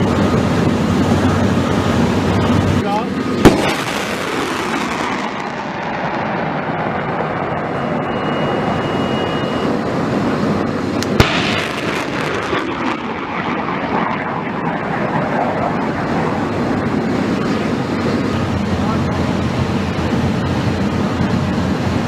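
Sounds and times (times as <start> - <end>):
loud rushing roar: 0.0 - 22.0
bright blast: 3.4 - 5.6, 11.0 - 13.6
sharp crack: 3.4 - 5.8, 11.0 - 14.4.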